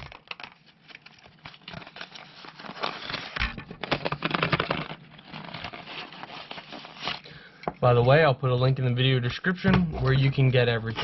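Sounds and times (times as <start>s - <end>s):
packaging crinkling: 0.0s - 7.5s.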